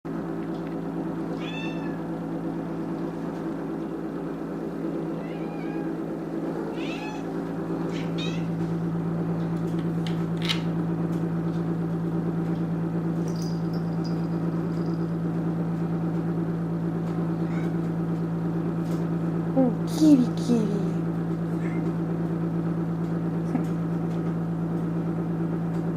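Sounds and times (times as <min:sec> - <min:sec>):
steady low hum: 0:00.1 - 0:25.9
cat meowing: 0:01.3 - 0:02.0, 0:05.1 - 0:06.0, 0:06.7 - 0:07.3, 0:07.9 - 0:08.6.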